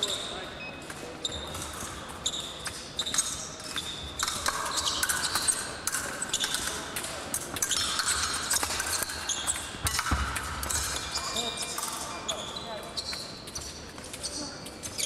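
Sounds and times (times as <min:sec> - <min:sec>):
fencing blades clicking: 0:00.9 - 0:15.0.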